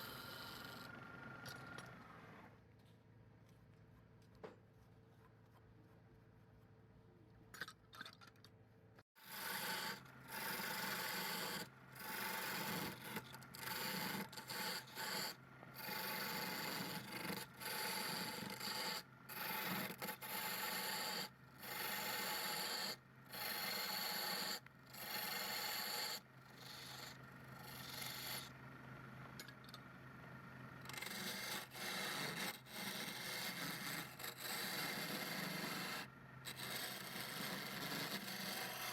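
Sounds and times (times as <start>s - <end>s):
turning tool scraping wood on lathe: 9.2s - 28.6s, 30.8s - 38.9s.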